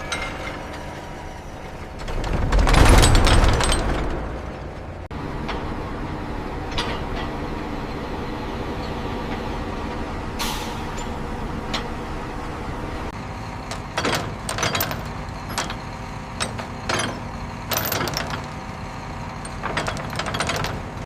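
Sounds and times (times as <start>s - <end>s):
sharp metal clanks and knocks: 0.0s - 1.1s, 1.9s - 4.8s, 6.6s - 7.4s, 13.6s - 21.0s
factory machinery humming: 0.0s - 21.0s.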